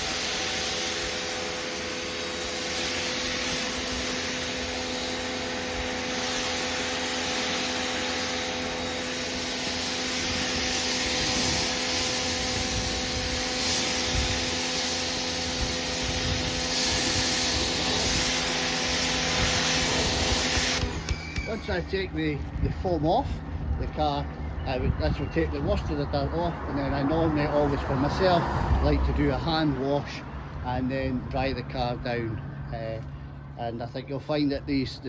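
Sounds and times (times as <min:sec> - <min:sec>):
high-pressure water jet hissing: 0:00.0 - 0:23.4
pressure washer pump humming: 0:00.0 - 0:24.5.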